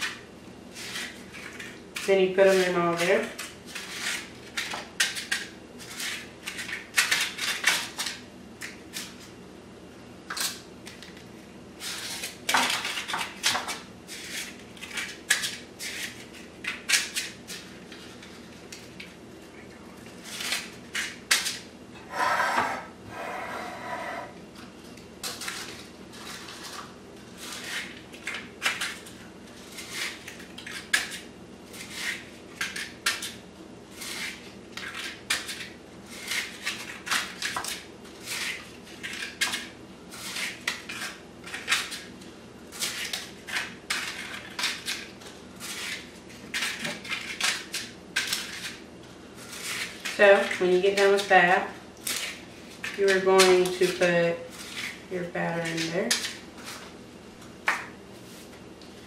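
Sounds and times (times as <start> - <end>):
metal scraping: 22.0 - 24.4.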